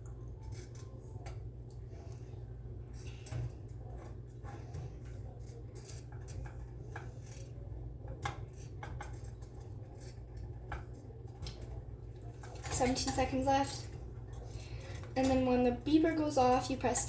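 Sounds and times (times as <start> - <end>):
steady low hum: 0.0 - 17.0
spoon scraping a pot: 2.9 - 11.0.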